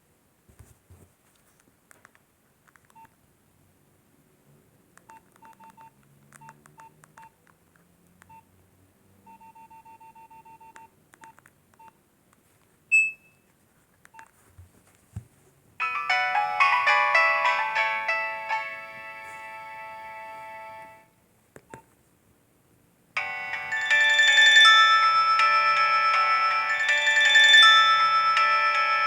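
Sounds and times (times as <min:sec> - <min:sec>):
phone keypad beeps: 0:05.1 - 0:07.4, 0:09.3 - 0:12.0, 0:12.9 - 0:13.4
polyphonic ringtone: 0:15.8 - 0:21.1, 0:23.2 - 0:29.0.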